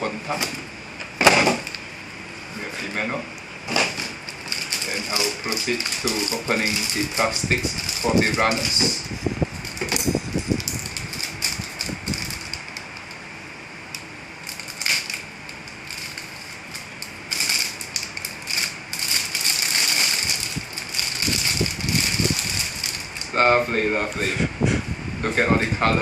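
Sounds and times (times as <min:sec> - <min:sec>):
plastic bags crinkling: 0:03.7 - 0:13.2, 0:14.4 - 0:24.4.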